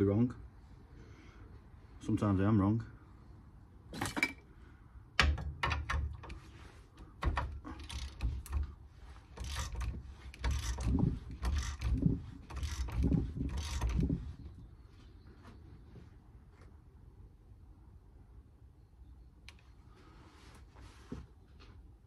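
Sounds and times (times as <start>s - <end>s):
ratchet rasping: 7.2s - 14.4s.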